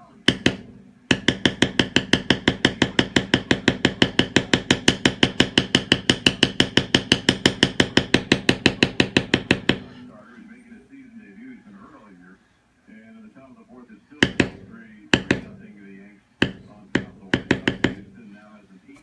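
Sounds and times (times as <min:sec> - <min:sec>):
mallet tapping metal stamp: 0:00.2 - 0:09.9, 0:14.2 - 0:15.6, 0:16.4 - 0:18.1.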